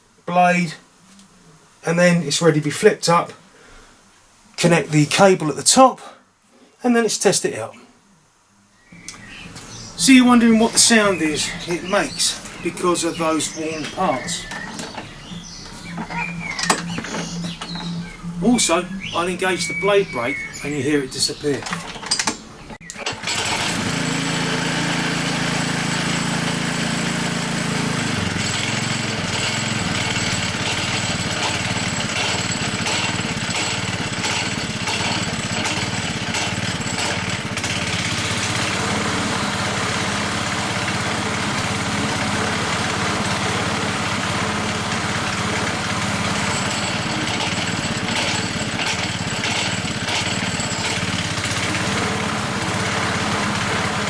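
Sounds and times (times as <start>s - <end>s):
lawn mower engine running: 9.0s - 54.0s
blade brake disc knocking: 13.8s - 20.6s, 28.3s - 38.7s, 44.2s - 52.9s.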